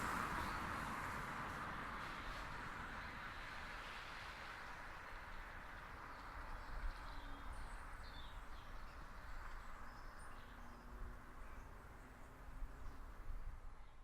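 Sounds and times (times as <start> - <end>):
passing car tyre noise: 0.0 - 6.4.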